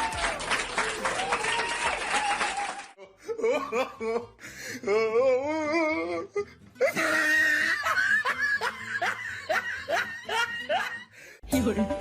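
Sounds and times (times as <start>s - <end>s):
person laughing: 3.0s - 4.4s, 6.8s - 11.1s.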